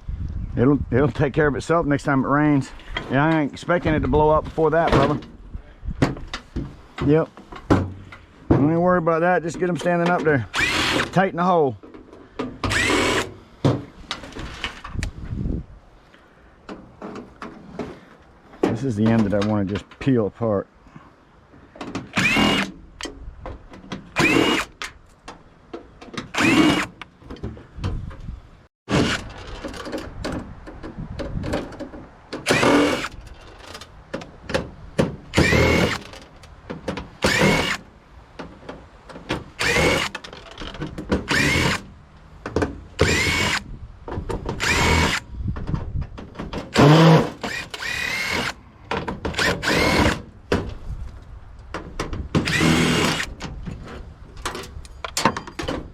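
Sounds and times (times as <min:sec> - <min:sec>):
power drill spinning in bursts: 0:10.5 - 0:11.1, 0:12.7 - 0:13.3, 0:22.2 - 0:22.7, 0:24.2 - 0:24.7, 0:26.3 - 0:26.9, 0:32.5 - 0:33.1, 0:35.3 - 0:36.1, 0:37.2 - 0:37.8, 0:39.6 - 0:40.1, 0:41.3 - 0:41.8, 0:43.0 - 0:43.6, 0:44.6 - 0:45.2, 0:46.7 - 0:48.6, 0:49.4 - 0:50.2, 0:52.4 - 0:53.3.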